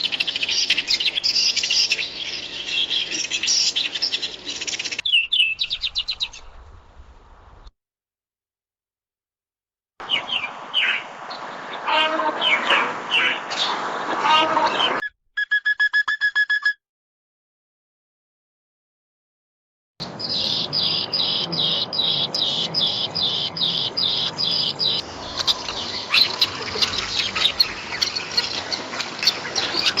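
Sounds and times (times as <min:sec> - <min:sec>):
birds chirping in chorus: 0:00.0 - 0:06.4, 0:20.0 - 0:30.0.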